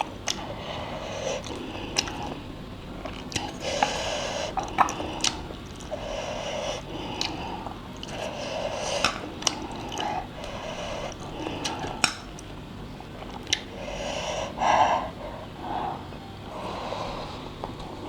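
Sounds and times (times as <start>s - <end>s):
mouth clicks and smacks: 0.0s - 2.4s, 3.0s - 12.6s, 13.2s - 13.8s
wet chewing and slurping: 0.0s - 18.0s.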